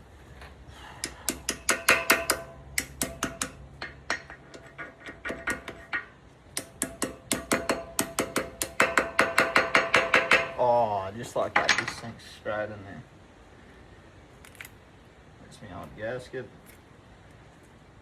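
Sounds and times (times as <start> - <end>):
hammer tapping metal ring: 1.0 - 10.6.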